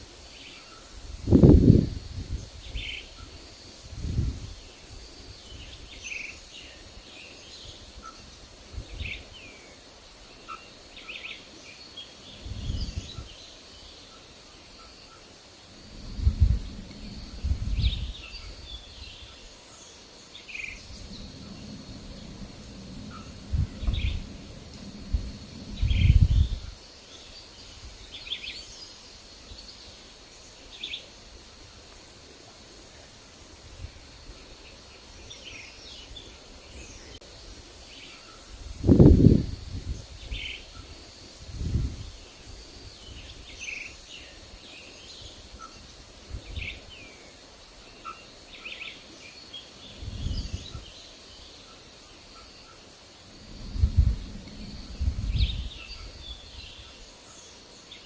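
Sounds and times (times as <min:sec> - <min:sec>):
wind rumbling on microphone: 0:01.0 - 0:07.0, 0:07.6 - 0:09.4, 0:12.3 - 0:13.4, 0:15.6 - 0:19.5, 0:20.5 - 0:26.9, 0:38.5 - 0:43.7, 0:45.2 - 0:47.0, 0:49.8 - 0:51.0, 0:53.2 - 0:57.1
birds chirping: 0:04.2 - 0:31.2.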